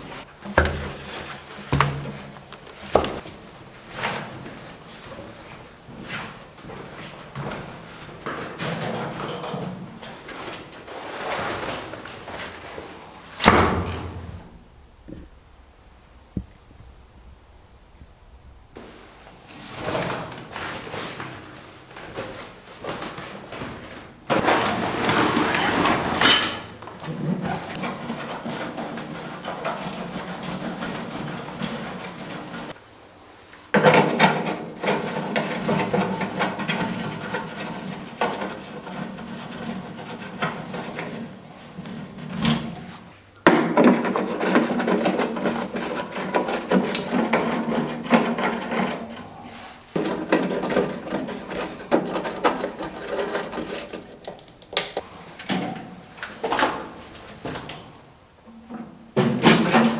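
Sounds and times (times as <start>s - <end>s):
wood rubbing and rasping: 27.7s - 32.8s, 34.8s - 41.2s, 43.9s - 54.4s.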